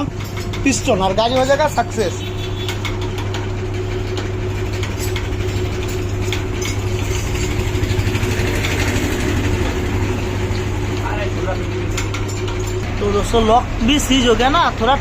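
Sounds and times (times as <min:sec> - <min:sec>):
hand tools clicking on metal: 0:00.0 - 0:01.9, 0:11.8 - 0:12.8
low mechanical hum: 0:00.0 - 0:15.0.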